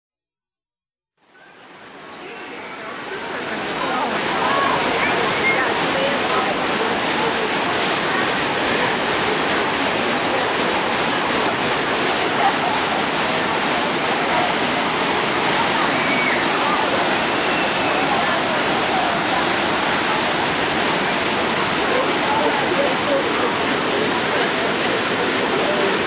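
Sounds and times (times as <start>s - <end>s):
churning rapids water: 1.2s - 26.0s.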